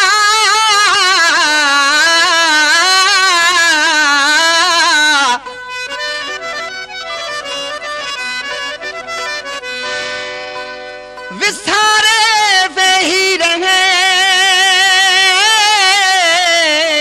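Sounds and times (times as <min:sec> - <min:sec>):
rhythmic strummed beat: 0:00.0 - 0:16.0
reed instrument playing: 0:05.4 - 0:11.5.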